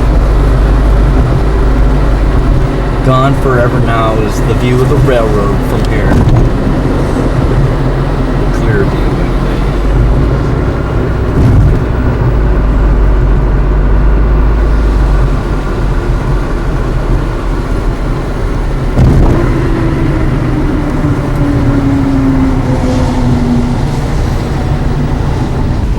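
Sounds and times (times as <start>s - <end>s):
car engine and road rumble: 0.0s - 25.9s
low falling tone: 0.0s - 25.9s.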